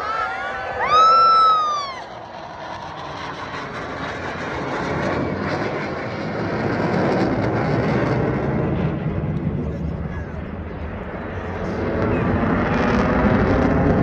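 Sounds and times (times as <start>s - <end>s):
spectator whooping: 0.0s - 2.2s
military jet flying past: 0.0s - 14.0s.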